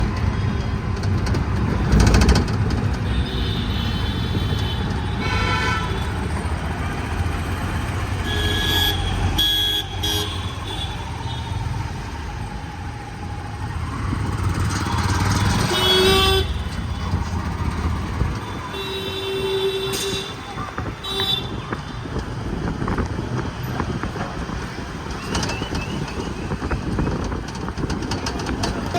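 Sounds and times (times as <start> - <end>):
road traffic rumble: 0.0 - 28.9
vehicle horns honking: 3.0 - 6.4, 8.0 - 11.7, 15.0 - 17.5, 18.4 - 22.1.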